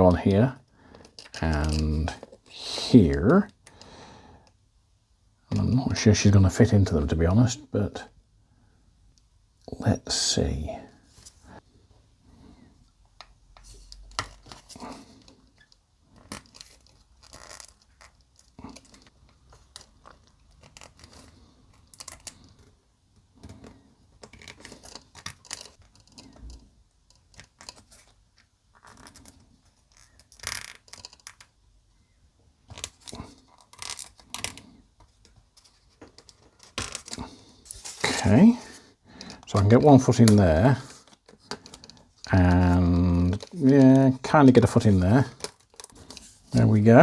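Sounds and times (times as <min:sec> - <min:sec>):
light clicks and scrapes of model parts: 0:00.9 - 0:02.5, 0:13.2 - 0:22.7, 0:23.4 - 0:31.5, 0:32.7 - 0:47.0.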